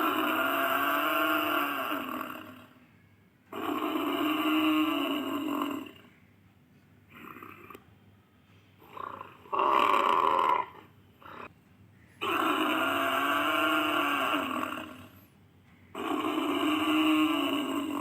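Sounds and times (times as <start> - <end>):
buffalo calls: 8.8 - 11.5, 12.2 - 15.2, 16.0 - 18.0.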